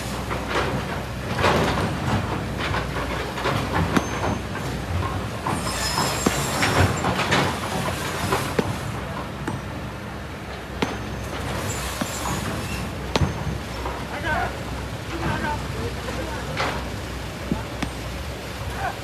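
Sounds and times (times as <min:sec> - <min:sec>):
excavator diesel engine running: 0:00.0 - 0:19.0
stones clanking against steel: 0:00.1 - 0:09.7, 0:10.6 - 0:14.2
high metallic squeal: 0:05.4 - 0:08.2, 0:11.1 - 0:13.6.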